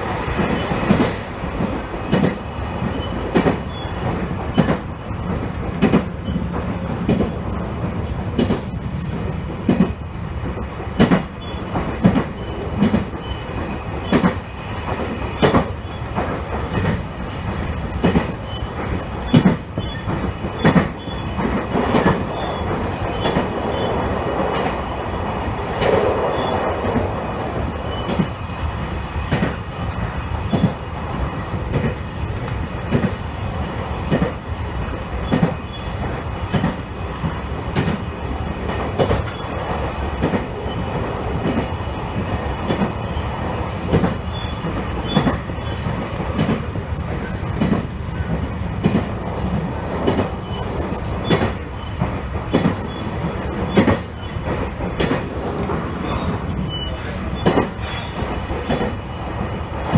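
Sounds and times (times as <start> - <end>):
electric train rumbling: 0.0 - 59.9
wheels clicking over rail joints: 14.1 - 23.5, 43.9 - 59.0.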